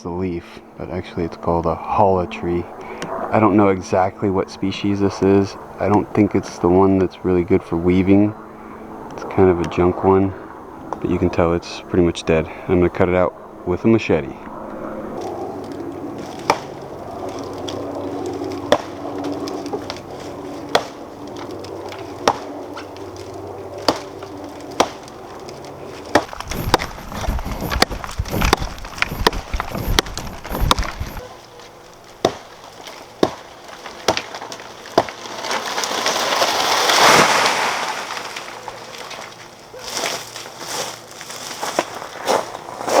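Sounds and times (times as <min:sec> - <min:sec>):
machete chopping wood: 0:16.2 - 0:16.8, 0:18.6 - 0:19.0, 0:20.7 - 0:21.0, 0:22.2 - 0:22.5, 0:23.8 - 0:24.1, 0:24.8 - 0:25.1, 0:26.1 - 0:31.2, 0:32.2 - 0:35.3
rustling crash: 0:35.2 - 0:39.3.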